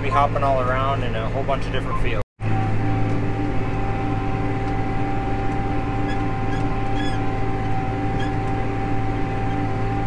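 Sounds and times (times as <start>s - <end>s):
constant whine: 0.0s - 10.0s
tractor diesel engine running: 0.0s - 10.0s
faint short squeaks: 6.0s - 7.3s, 8.2s - 8.5s.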